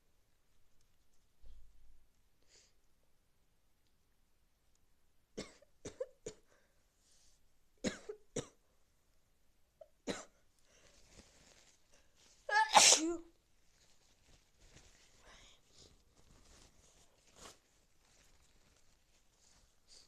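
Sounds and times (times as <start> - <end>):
person sneezing: 12.5 - 13.2.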